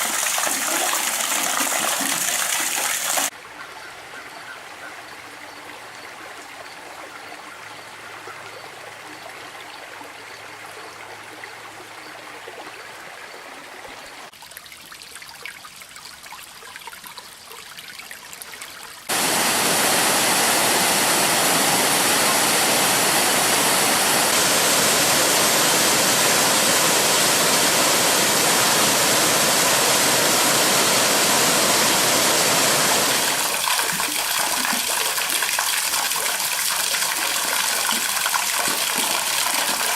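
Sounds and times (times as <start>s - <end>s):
rush of falling water: 0.0s - 3.4s, 19.1s - 39.9s
trickling stream: 0.0s - 39.9s.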